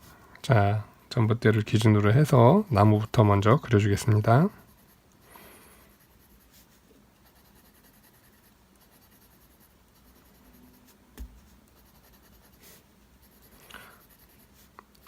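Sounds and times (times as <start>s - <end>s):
pencil scratching on paper: 3.9s - 14.8s.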